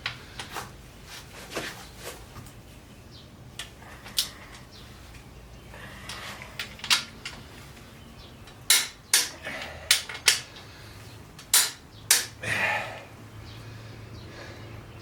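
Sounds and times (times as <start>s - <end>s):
tools clanking on metal: 6.0s - 7.6s, 8.4s - 10.7s, 11.4s - 12.4s.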